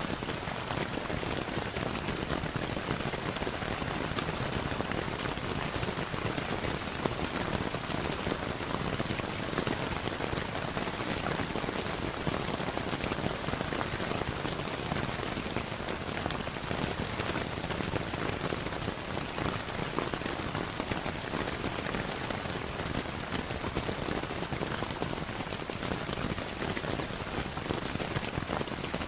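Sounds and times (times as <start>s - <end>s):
steady rain falling: 0.0s - 29.0s.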